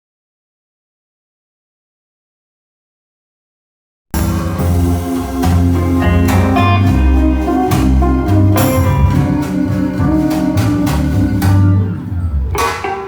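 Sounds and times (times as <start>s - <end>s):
heavy subwoofer bass: 4.2s - 12.5s
guitar music with drums: 4.2s - 13.0s.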